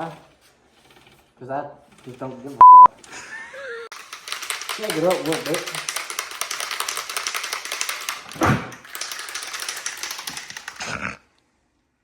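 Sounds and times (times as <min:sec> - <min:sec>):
spray can ball rattling: 0:03.9 - 0:10.8.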